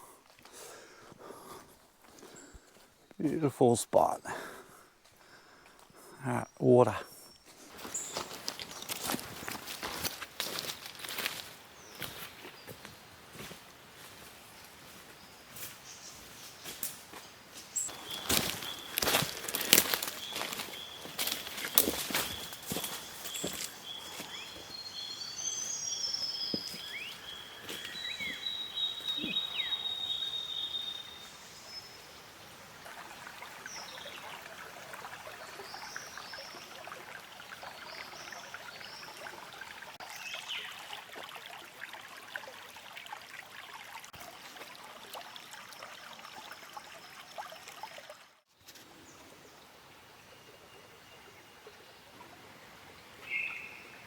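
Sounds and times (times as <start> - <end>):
creek water trickling: 0.0 - 54.0
whistled bird calls: 20.2 - 32.0, 53.2 - 54.0.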